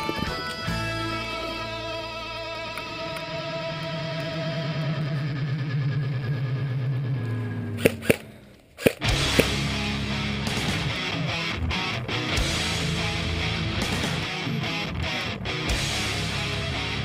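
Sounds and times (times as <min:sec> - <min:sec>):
distorted electric guitar music: 0:00.0 - 0:08.0, 0:09.0 - 0:17.0
sharp hits: 0:07.7 - 0:11.4.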